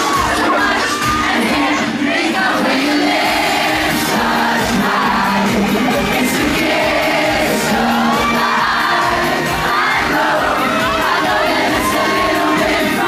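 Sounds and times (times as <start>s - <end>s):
crowd screaming and singing: 0.0s - 13.0s
male vocals singing: 0.0s - 13.0s
drum beat: 3.1s - 13.0s.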